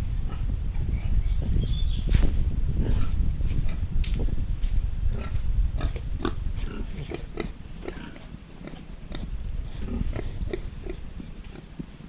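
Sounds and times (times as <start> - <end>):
pigs grunting: 5.1 - 11.8.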